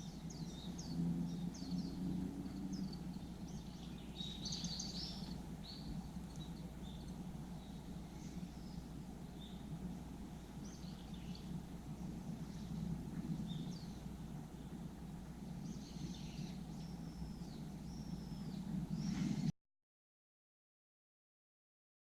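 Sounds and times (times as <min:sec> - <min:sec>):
whistled bird notes: 0:00.0 - 0:09.7, 0:15.6 - 0:19.5
low outdoor rumble: 0:00.0 - 0:19.5
small birds chirping: 0:00.0 - 0:19.5.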